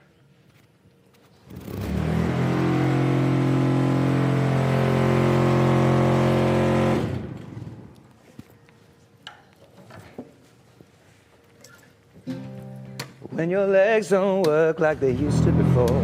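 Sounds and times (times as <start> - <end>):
loud deep engine drone: 1.6 - 7.8, 15.0 - 16.0.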